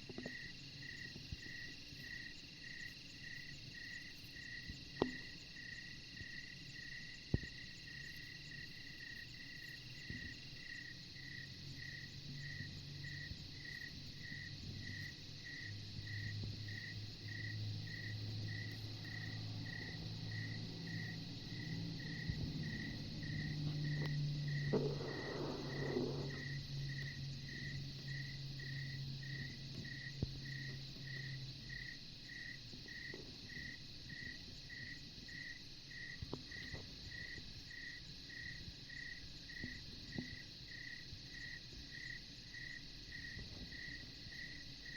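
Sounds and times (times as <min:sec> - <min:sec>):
steady high hiss: 0:00.0 - 0:39.5
insects chirping: 0:00.0 - 0:44.9
low hum: 0:18.8 - 0:31.4.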